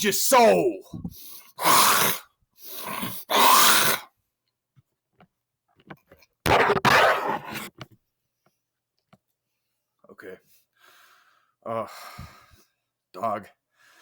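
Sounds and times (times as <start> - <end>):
man's raspy breath and throat noise: 1.0 - 4.1.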